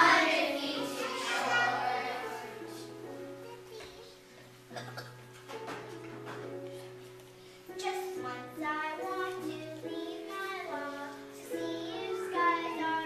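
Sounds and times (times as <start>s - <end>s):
children singing: 0.0s - 2.9s
musical accompaniment: 0.0s - 13.0s.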